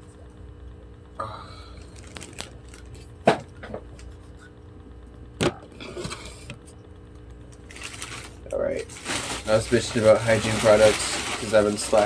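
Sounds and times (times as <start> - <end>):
packaging rustle: 1.9 - 3.1, 7.6 - 12.0.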